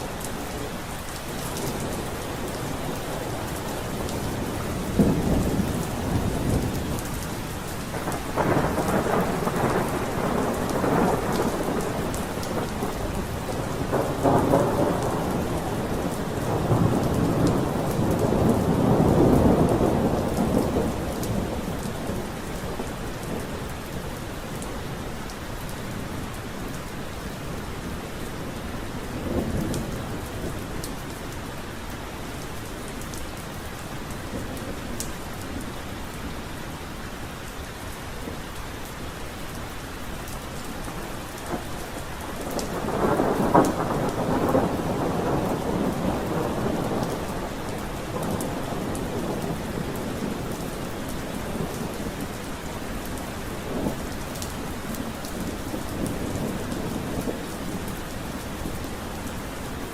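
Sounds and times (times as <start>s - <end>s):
steady rain: 0.0s - 59.9s
thunder rolling: 42.5s - 50.7s.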